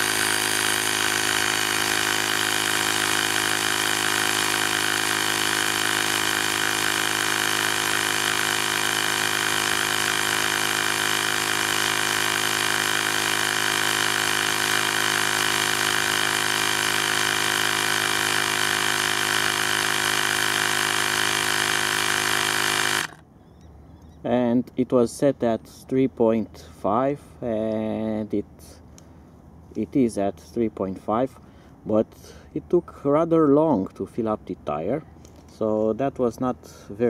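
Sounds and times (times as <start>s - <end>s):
tire inflator compressor motor: 0.0s - 23.2s.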